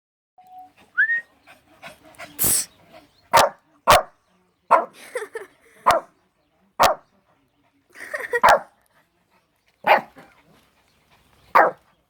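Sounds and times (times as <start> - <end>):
person fake sneezing: 2.4 - 2.7
dog barking: 3.3 - 4.1, 4.7 - 5.0, 5.8 - 6.1, 6.8 - 7.0, 8.4 - 8.7, 9.9 - 10.1, 11.5 - 11.8.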